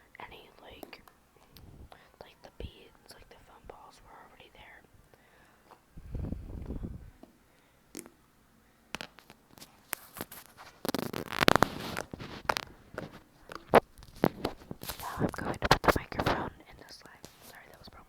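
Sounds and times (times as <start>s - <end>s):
slime squishing and popping: 8.9s - 9.4s, 10.0s - 12.7s.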